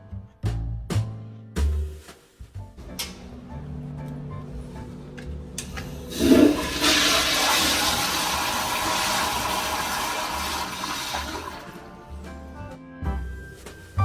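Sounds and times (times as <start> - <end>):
toilet flushing: 2.8 - 12.3.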